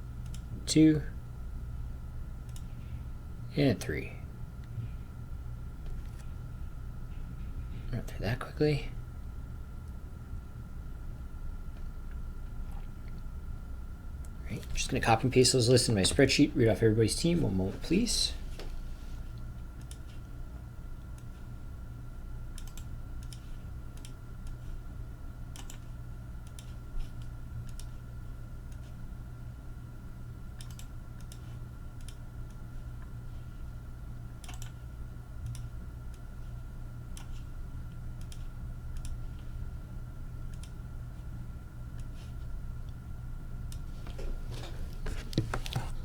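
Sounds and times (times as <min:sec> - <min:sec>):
low electrical hum: 0:00.0 - 0:46.0
keyboard and mouse clicks: 0:25.5 - 0:27.9, 0:30.6 - 0:31.4, 0:34.4 - 0:34.8.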